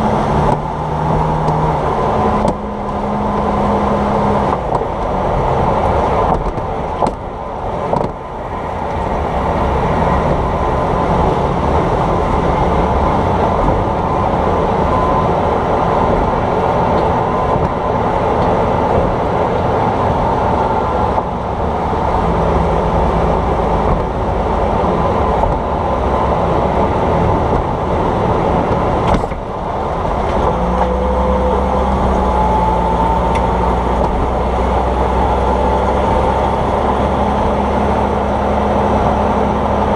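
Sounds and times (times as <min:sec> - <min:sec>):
vehicle road noise: 0:00.0 - 0:39.9
suspension knocks: 0:23.1 - 0:27.9.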